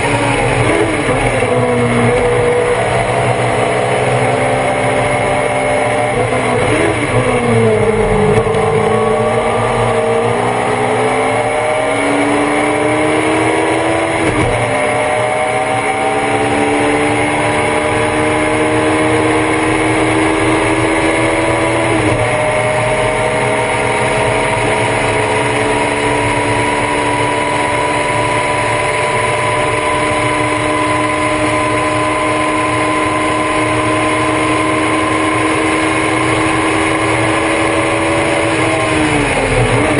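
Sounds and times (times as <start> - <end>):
race car engine revving: 0.0 - 39.9.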